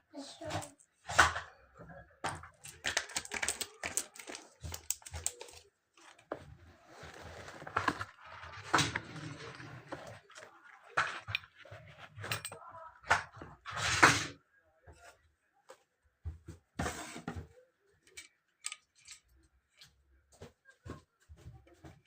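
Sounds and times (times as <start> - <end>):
small hard parts clicking and rattling: 2.2 - 6.3, 18.0 - 20.0.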